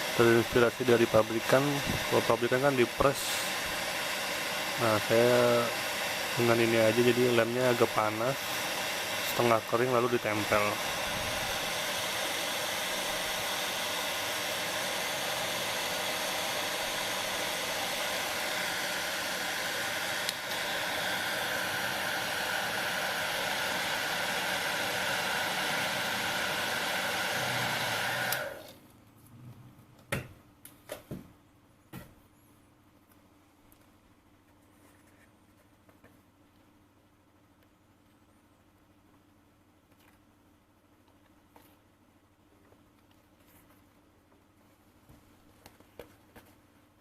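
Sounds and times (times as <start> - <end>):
hair dryer blowing: 0.0 - 28.8.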